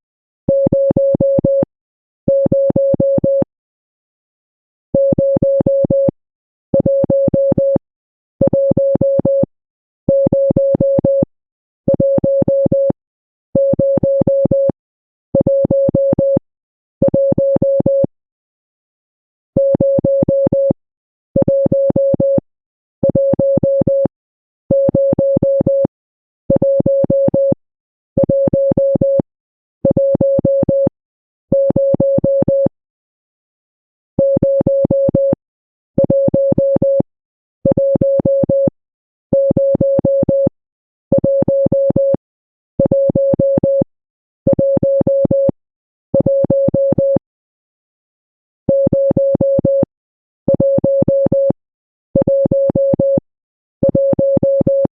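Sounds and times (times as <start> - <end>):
morse code beeps: 8.5 - 9.5, 15.4 - 16.4, 21.4 - 22.4, 23.1 - 24.1, 24.7 - 25.9, 31.6 - 32.7, 34.2 - 35.4, 36.0 - 38.7, 39.3 - 40.5, 46.2 - 47.2, 48.7 - 49.9, 50.5 - 51.5.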